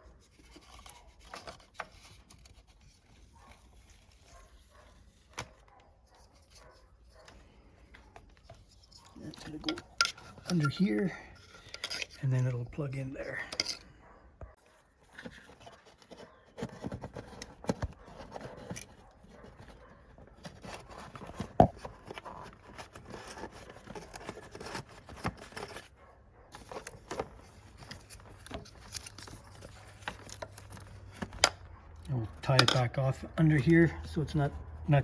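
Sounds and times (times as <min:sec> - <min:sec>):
wire and plastic parts clicking: 0:00.3 - 0:12.3, 0:15.2 - 0:25.9, 0:26.6 - 0:33.3.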